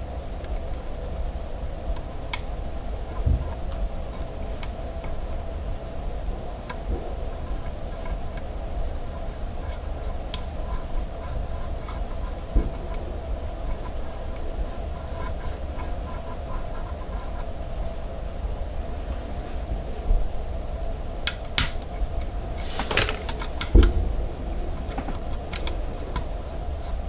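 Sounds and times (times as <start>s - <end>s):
steady low hum: 0.0s - 27.0s
dull thumps: 22.3s - 26.9s.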